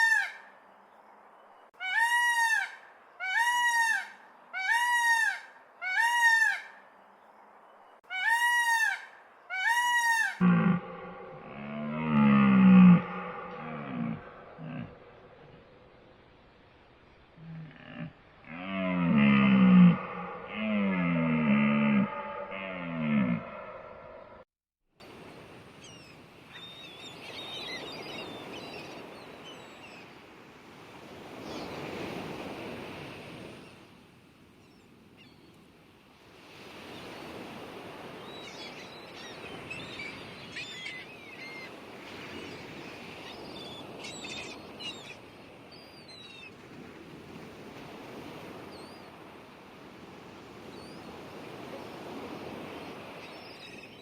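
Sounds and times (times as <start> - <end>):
surf washing in and out: 10.4 - 24.4, 25.0 - 54.0.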